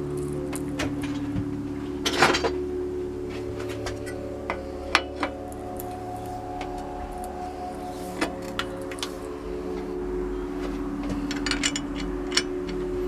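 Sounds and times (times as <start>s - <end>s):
metal tools clinking and rattling: 0.0s - 2.6s, 10.6s - 13.0s
ambient background music: 0.0s - 13.0s.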